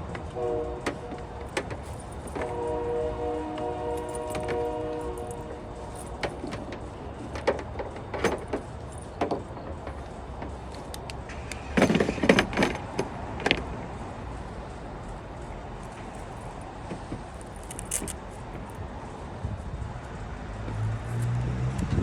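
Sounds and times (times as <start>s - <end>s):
knocks and clatter: 6.0s - 13.8s.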